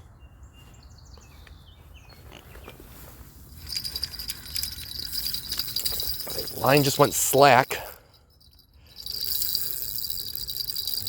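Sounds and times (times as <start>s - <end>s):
fishing reel clicker ratcheting: 3.7s - 6.9s, 8.4s - 11.0s.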